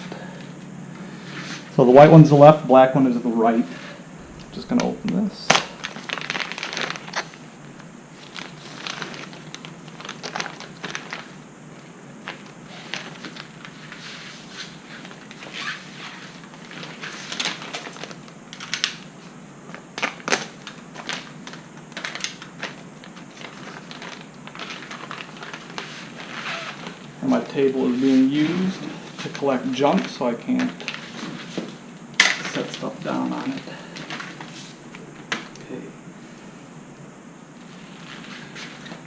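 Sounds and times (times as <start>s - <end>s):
packaging crinkling and rustling: 4.8s - 19.1s, 19.7s - 27.2s, 28.3s - 35.6s, 37.6s - 39.0s.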